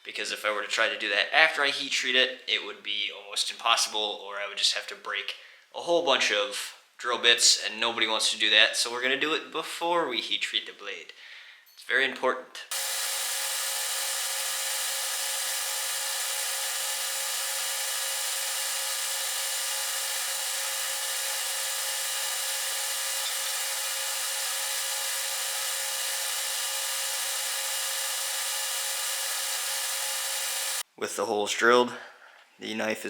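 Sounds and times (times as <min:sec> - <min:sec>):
electric drill drilling steel: 0:12.7 - 0:30.8.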